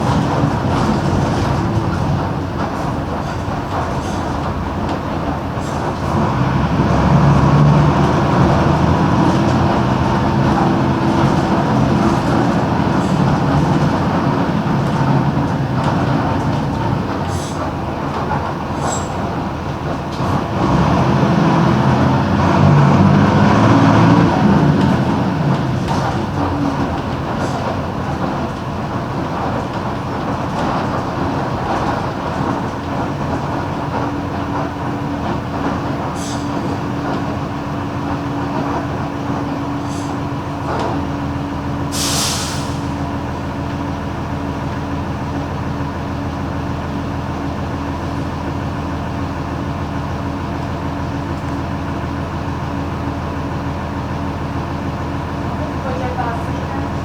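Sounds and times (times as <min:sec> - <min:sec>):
bus diesel engine running: 0:00.0 - 0:57.0
compressed air hiss: 0:41.9 - 0:43.0.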